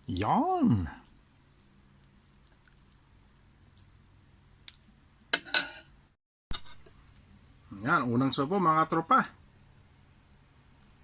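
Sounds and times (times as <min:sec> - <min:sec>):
soft eating sounds: 0:00.0 - 0:04.9.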